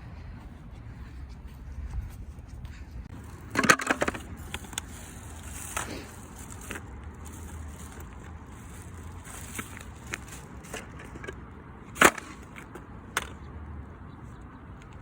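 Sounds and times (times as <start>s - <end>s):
toy car wheels rattling: 3.1s - 11.4s.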